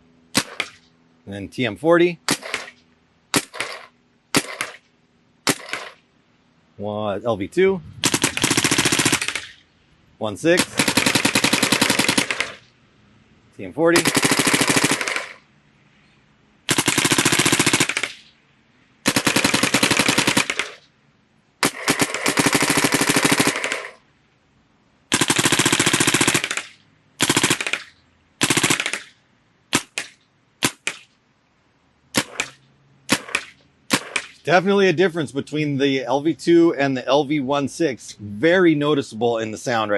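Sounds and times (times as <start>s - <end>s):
paintball markers firing: 29.8s - 31.1s, 32.2s - 34.4s.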